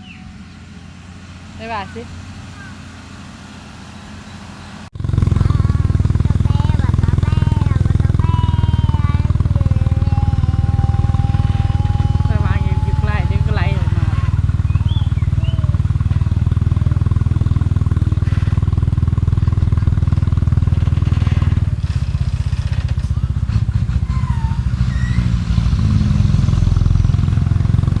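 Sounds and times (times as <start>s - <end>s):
heavy diesel engine rumbling: 0.0s - 28.0s.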